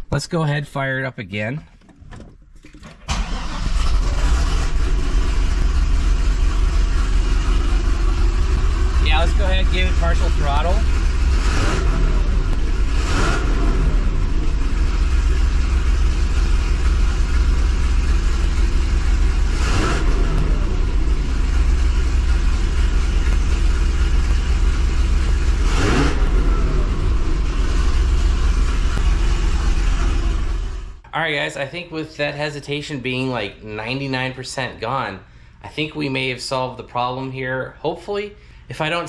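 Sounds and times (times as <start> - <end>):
car engine idling and revving: 3.1 - 31.0.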